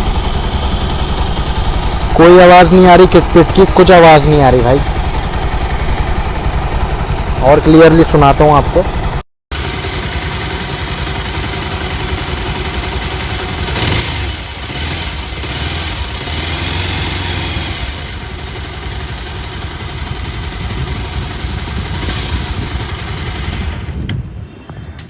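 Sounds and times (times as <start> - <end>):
motorcycle engine idling: 0.0 - 24.0.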